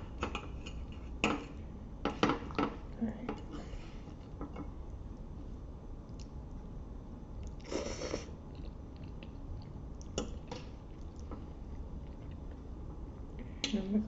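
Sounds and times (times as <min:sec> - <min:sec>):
wet chewing with clicks: 0:08.5 - 0:10.2.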